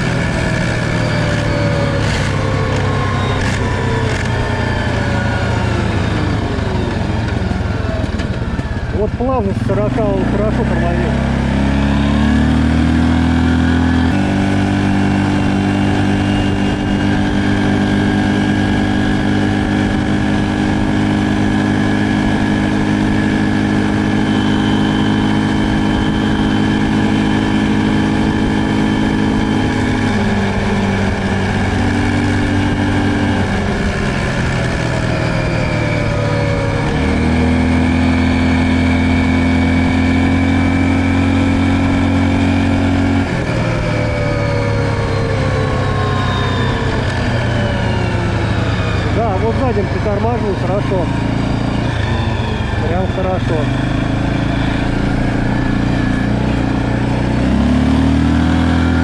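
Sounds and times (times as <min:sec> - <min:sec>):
quad bike engine running: 0:00.0 - 0:59.0.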